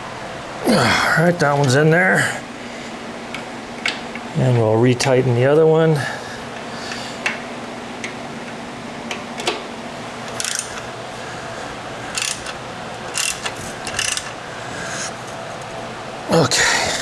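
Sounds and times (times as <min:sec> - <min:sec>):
ratchet wrench clicking: 0:10.3 - 0:10.8, 0:12.1 - 0:14.4.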